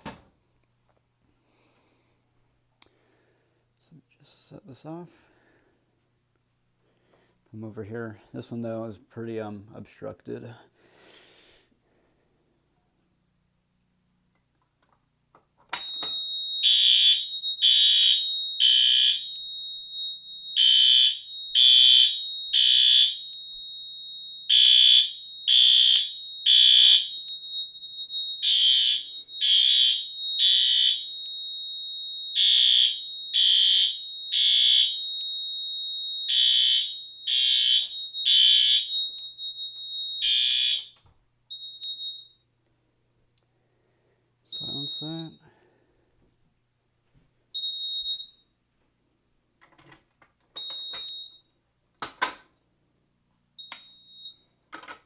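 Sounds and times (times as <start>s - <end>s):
fire alarm horn blasts: 15.7s - 42.4s, 44.5s - 45.6s.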